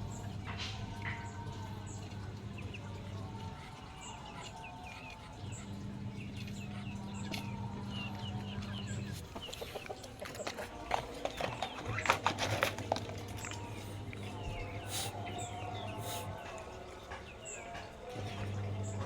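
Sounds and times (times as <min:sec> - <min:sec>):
chickens clucking: 0:00.0 - 0:19.0.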